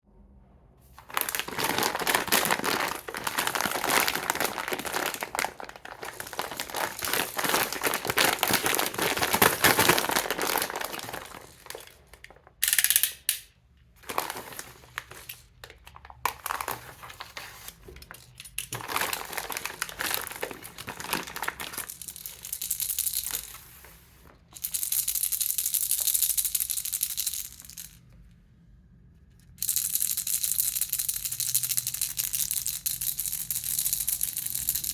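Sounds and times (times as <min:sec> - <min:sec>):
baby rattle shaking: 0:01.0 - 0:13.1, 0:18.0 - 0:23.9, 0:24.5 - 0:28.0, 0:29.6 - 0:34.9.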